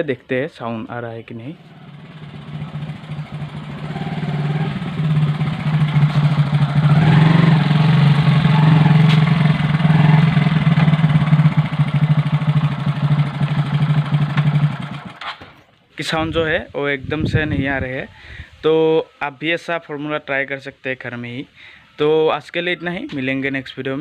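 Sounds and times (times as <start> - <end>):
motorcycle engine revving: 1.6 - 15.4.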